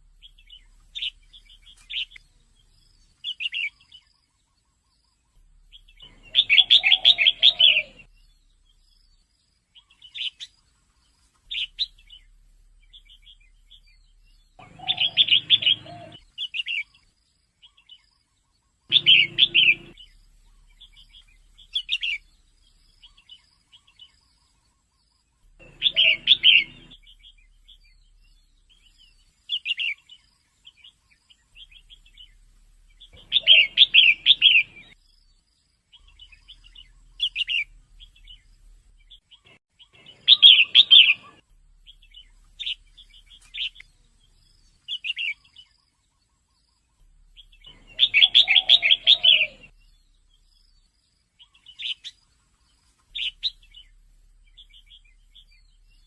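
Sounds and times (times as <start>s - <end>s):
bird rapid chirps: 5.4s - 9.1s, 11.5s - 17.0s, 18.9s - 24.2s, 25.4s - 35.0s, 36.0s - 45.8s, 47.0s - 56.0s
bird chattering: 6.0s - 8.1s, 14.6s - 16.8s, 18.9s - 22.3s, 25.6s - 27.8s, 33.0s - 35.0s, 47.6s - 49.8s.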